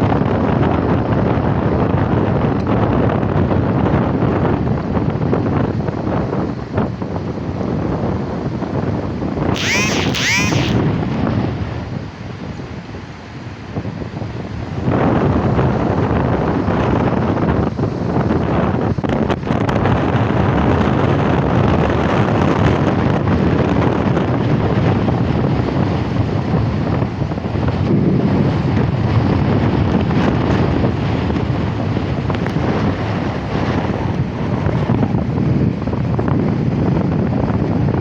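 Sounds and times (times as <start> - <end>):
wind buffeting microphone: 14.8 - 38.0.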